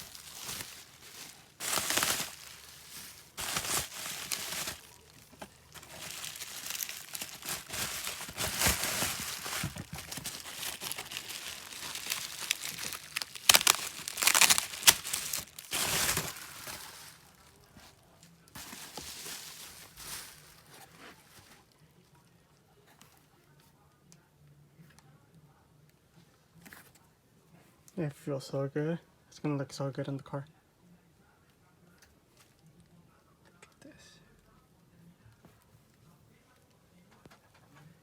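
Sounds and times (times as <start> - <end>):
packaging rustling: 0.0 - 18.0, 18.6 - 21.6.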